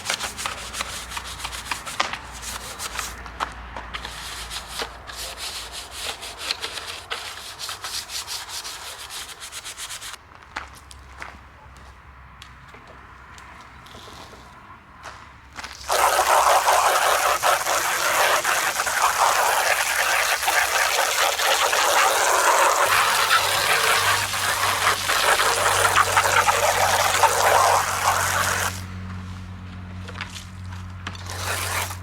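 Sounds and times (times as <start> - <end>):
liquid spraying: 15.8 - 28.9, 31.3 - 32.0.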